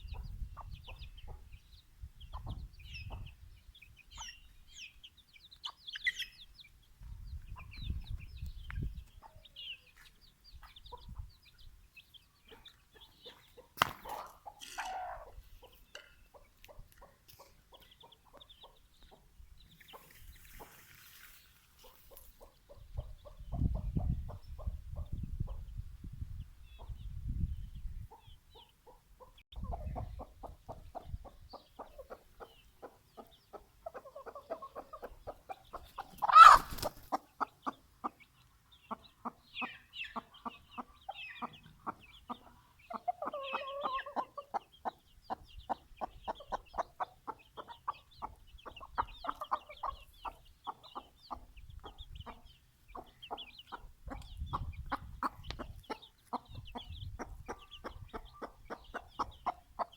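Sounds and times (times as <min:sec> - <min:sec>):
chickens clucking: 0:00.0 - 0:59.9
chicken squawk: 0:13.3 - 0:15.4, 0:36.0 - 0:37.0, 0:43.0 - 0:44.5
chickens pecking: 0:34.0 - 0:37.3.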